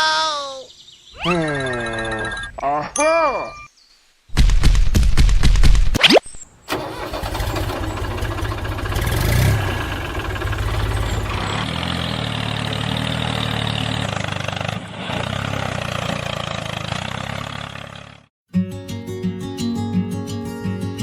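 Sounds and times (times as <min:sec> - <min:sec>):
tractor engine chugging: 0:06.7 - 0:18.2.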